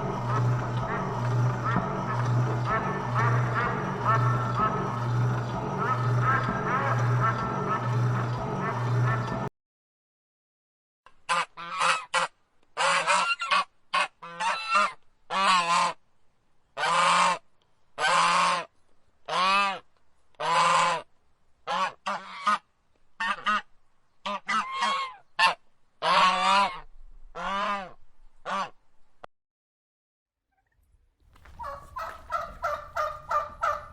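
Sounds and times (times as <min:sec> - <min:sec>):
geese honking: 0:00.0 - 0:09.5, 0:24.3 - 0:26.8, 0:31.4 - 0:33.9.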